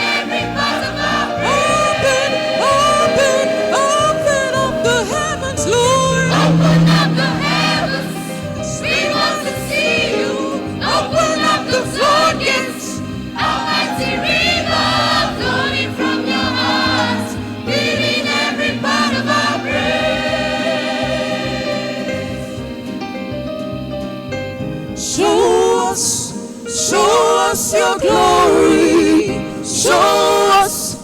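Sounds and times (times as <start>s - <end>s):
choir singing: 0.0s - 23.3s, 25.0s - 31.0s
low sustained accompaniment: 1.5s - 13.2s.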